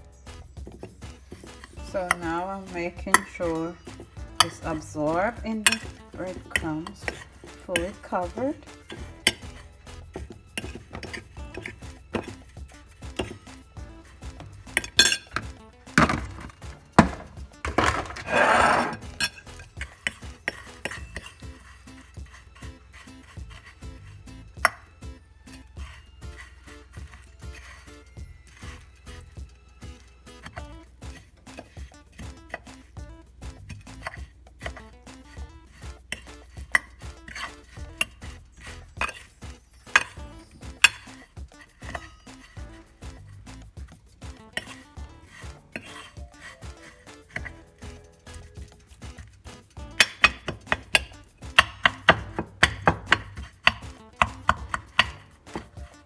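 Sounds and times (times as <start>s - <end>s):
background music: 0.0s - 56.0s
scraping noise: 0.0s - 56.0s
utensils and dishes clinking: 0.0s - 56.0s.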